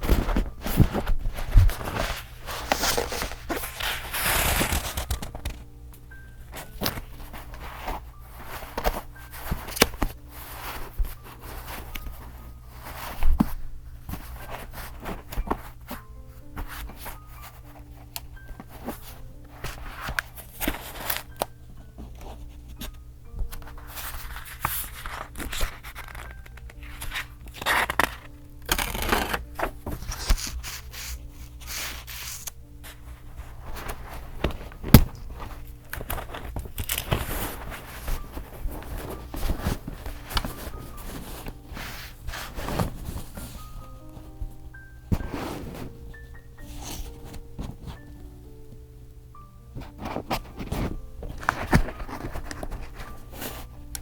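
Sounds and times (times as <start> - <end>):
paper crinkling and tearing: 0.0 - 5.7, 23.7 - 44.2
soft music: 0.0 - 54.0.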